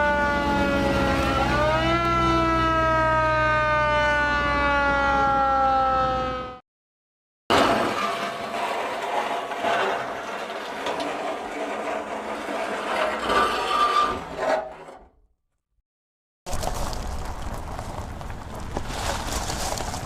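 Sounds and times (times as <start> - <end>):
metal scraping against metal: 7.5 - 15.2.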